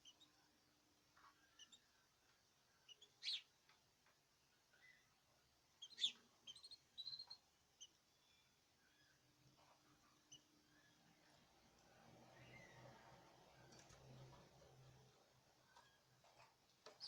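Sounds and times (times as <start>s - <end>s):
birds chirping: 2.8s - 3.5s, 5.8s - 11.4s.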